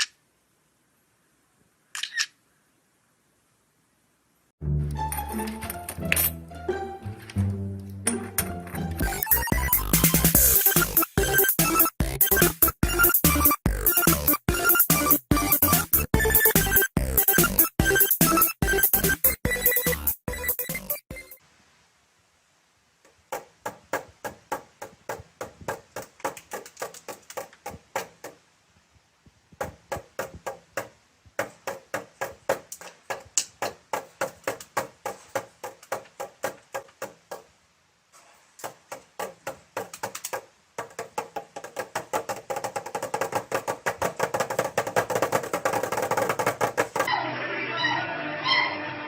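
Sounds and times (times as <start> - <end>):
rapid sharp taps: 23.3 - 28.4, 29.5 - 37.6, 38.6 - 47.1.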